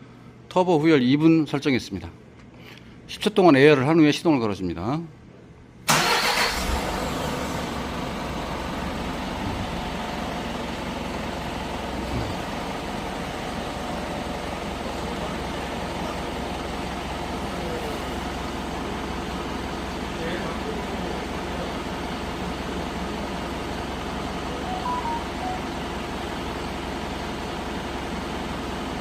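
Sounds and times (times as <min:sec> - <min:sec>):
diesel truck engine idling: 0:05.9 - 0:29.0.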